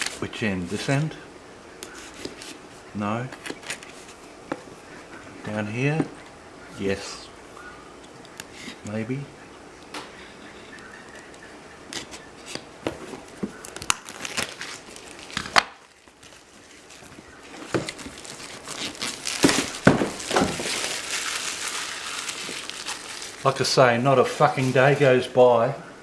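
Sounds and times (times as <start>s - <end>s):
plastic packaging crinkling: 0.0s - 0.3s, 12.0s - 25.2s.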